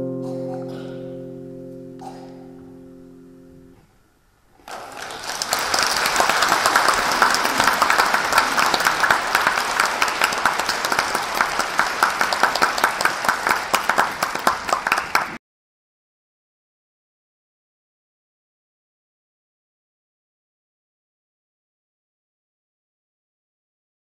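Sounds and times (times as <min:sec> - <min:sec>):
audience applauding: 0:04.6 - 0:15.4.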